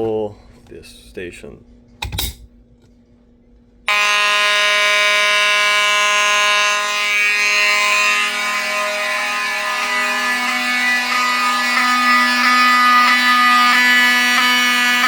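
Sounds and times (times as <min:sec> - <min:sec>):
fire alarm horns blaring: 0:03.9 - 0:15.0.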